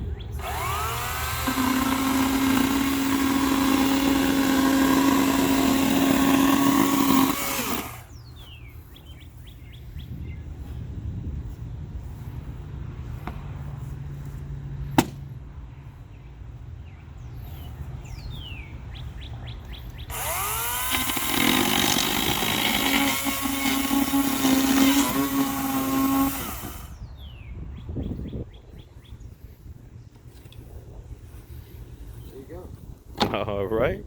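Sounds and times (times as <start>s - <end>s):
birds chirping: 0.0s - 10.8s, 15.3s - 30.7s
chainsaw whirring and cutting: 0.4s - 8.2s, 20.1s - 27.0s.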